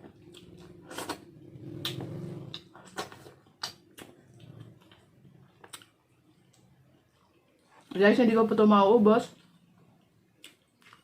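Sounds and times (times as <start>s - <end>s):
person chewing food: 0.0s - 7.9s, 9.4s - 11.0s
wet mouth clicks and lip smacks: 1.8s - 4.2s.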